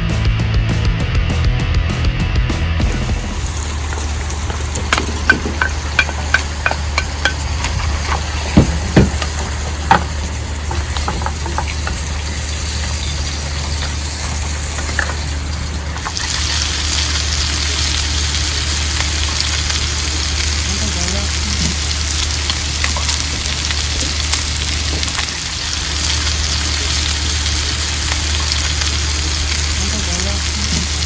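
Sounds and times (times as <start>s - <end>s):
food sizzling in a pan: 3.0s - 31.0s
utensil knocking against pan: 3.9s - 12.0s.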